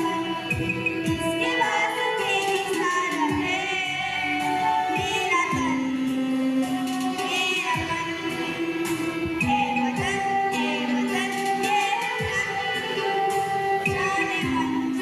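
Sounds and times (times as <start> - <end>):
instrumental backing: 0.0 - 15.0
woman singing: 0.0 - 15.0.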